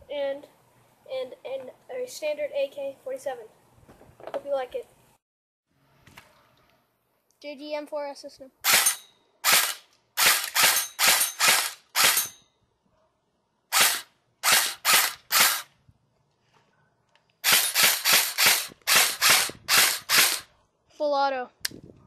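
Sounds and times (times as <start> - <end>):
airsoft gun firing single shots: 17.4 - 20.5.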